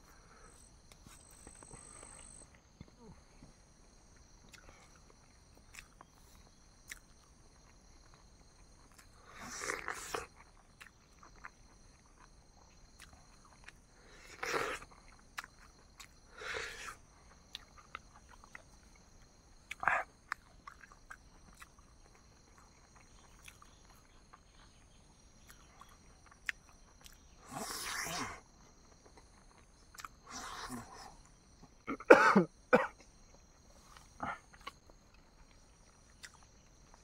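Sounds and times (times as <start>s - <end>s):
faint chewing clicks: 4.1s - 9.2s, 10.0s - 13.8s, 14.8s - 16.2s, 17.3s - 27.4s, 28.9s - 30.2s, 33.8s - 37.0s
person coughing: 31.9s - 33.1s.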